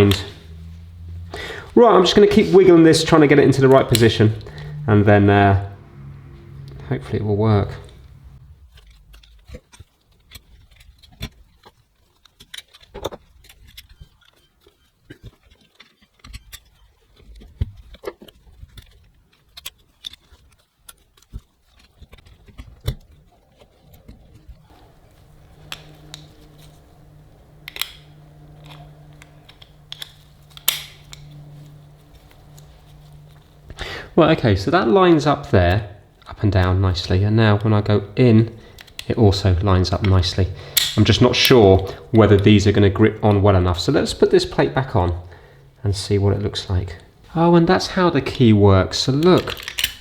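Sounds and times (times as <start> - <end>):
low steady hum: 0.0 - 9.2, 23.9 - 50.0
small metal lock parts clicking: 8.7 - 34.4, 35.7 - 42.6, 49.0 - 50.0.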